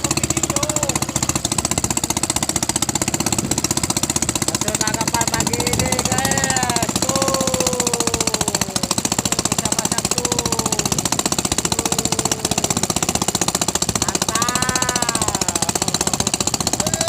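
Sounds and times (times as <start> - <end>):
voices: 0.0 - 1.5, 4.5 - 13.3, 13.9 - 17.0
small engine running: 0.0 - 17.0.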